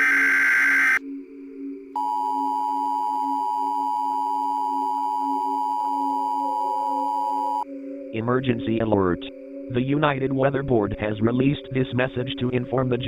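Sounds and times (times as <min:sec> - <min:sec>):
shrill electronic alert tone: 0:00.0 - 0:01.0.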